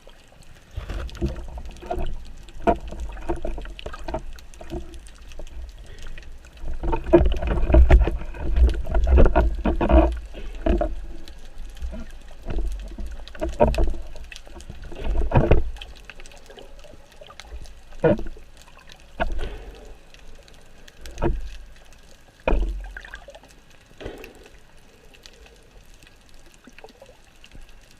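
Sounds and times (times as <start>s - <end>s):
water sloshing and gurgling: 0.0s - 27.9s
muffled thuds and splashes: 0.8s - 5.5s, 6.6s - 11.2s, 11.8s - 16.0s, 19.1s - 19.8s, 22.4s - 23.4s.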